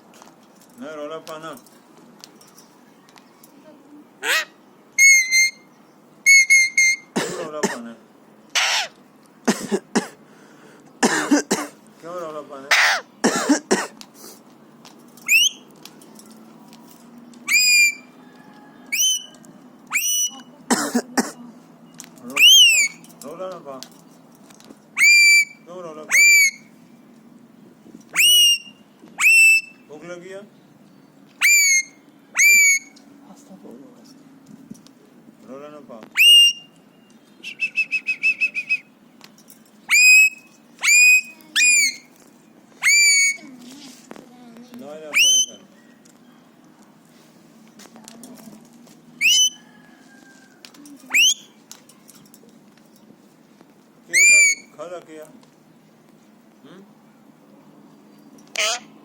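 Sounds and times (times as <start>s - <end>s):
parakeet harsh call: 4.2s - 5.7s, 6.3s - 7.2s, 8.5s - 9.0s, 12.7s - 13.2s, 17.5s - 18.1s, 19.9s - 20.5s, 22.4s - 23.0s, 25.0s - 26.7s, 28.1s - 29.8s, 31.4s - 33.0s, 36.2s - 36.7s, 39.9s - 42.1s, 42.8s - 43.4s, 45.1s - 45.6s, 49.2s - 49.8s, 51.1s - 51.5s, 54.1s - 54.7s, 58.5s - 59.0s
parakeet whistling: 4.2s - 7.1s, 15.3s - 15.6s, 17.5s - 18.1s, 18.9s - 19.3s, 19.9s - 20.5s, 22.4s - 23.0s, 25.0s - 26.7s, 28.2s - 29.9s, 31.4s - 33.0s, 36.2s - 36.8s, 37.4s - 38.9s, 39.9s - 42.1s, 42.8s - 43.4s, 45.2s - 45.6s, 49.2s - 49.8s, 51.1s - 51.5s, 54.2s - 54.7s
parakeet short chirps: 8.6s - 8.9s, 31.4s - 32.9s, 42.8s - 43.4s, 49.2s - 49.6s, 51.1s - 51.5s.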